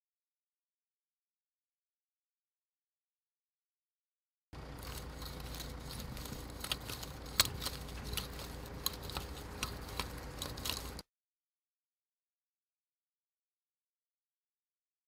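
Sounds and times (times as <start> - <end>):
faint low hum: 4.6 - 11.0
hand tool crunching and scraping soil: 4.6 - 11.0.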